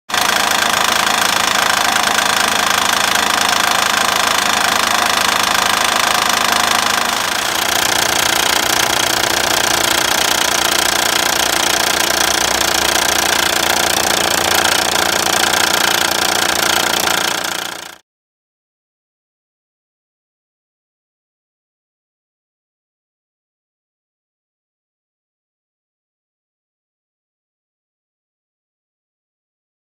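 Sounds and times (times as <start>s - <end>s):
engine running with knocking: 0.1s - 18.0s.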